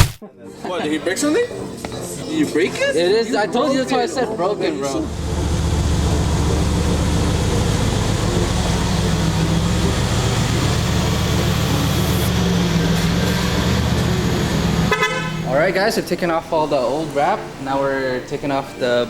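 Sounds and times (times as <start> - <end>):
vehicle engine rumbling: 4.8 - 17.6.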